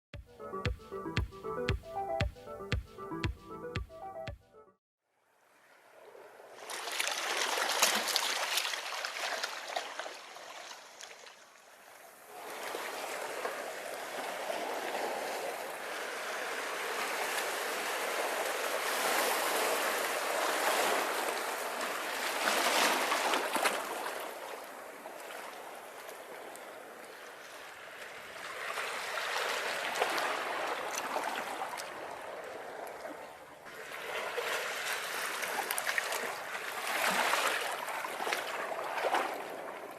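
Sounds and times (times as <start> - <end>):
ocean waves breaking on beach: 12.3 - 39.9.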